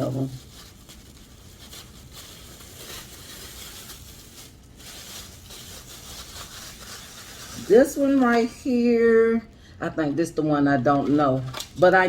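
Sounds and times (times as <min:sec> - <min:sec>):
rustling and scraping: 0:00.0 - 0:08.5.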